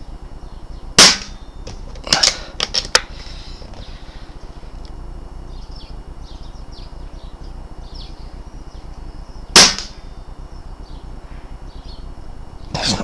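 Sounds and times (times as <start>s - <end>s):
air rifle shot: 1.0s - 1.4s, 9.5s - 10.1s.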